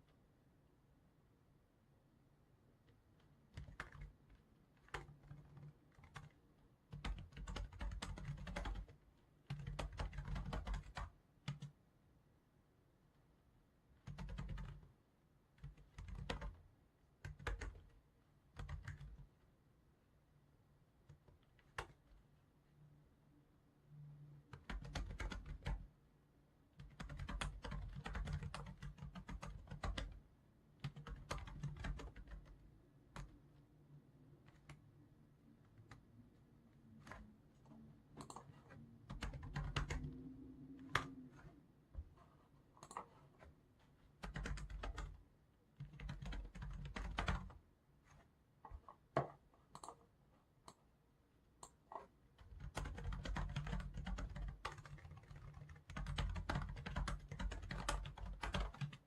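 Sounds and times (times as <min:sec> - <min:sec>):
typing on computer keyboard: 0:03.5 - 0:11.8, 0:14.0 - 0:14.9, 0:15.6 - 0:16.6, 0:17.2 - 0:19.3, 0:21.1 - 0:22.2, 0:24.5 - 0:25.9, 0:26.8 - 0:30.2, 0:30.8 - 0:33.5, 0:37.0 - 0:37.2, 0:38.1 - 0:40.2, 0:40.8 - 0:41.6, 0:42.8 - 0:43.4, 0:44.1 - 0:45.2, 0:45.8 - 0:47.6, 0:48.7 - 0:50.0, 0:52.4 - 0:59.0.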